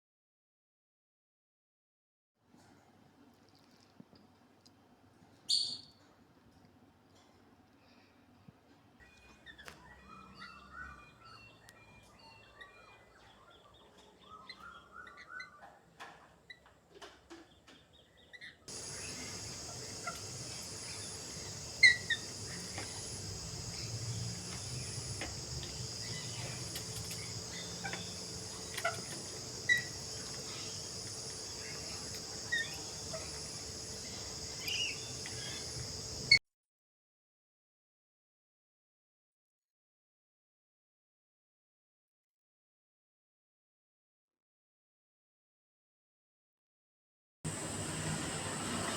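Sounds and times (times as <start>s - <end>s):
birds chirping: 17.5s - 36.4s
high insect drone: 18.7s - 36.4s, 47.5s - 48.9s.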